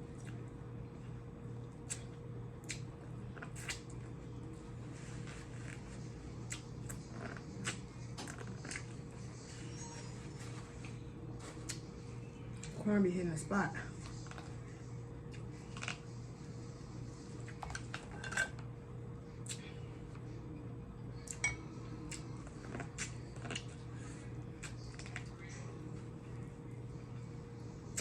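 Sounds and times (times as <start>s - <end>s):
steady low hum: 0.0s - 28.0s
chewing: 0.1s - 0.5s, 1.7s - 4.1s, 5.2s - 9.0s, 22.0s - 25.4s.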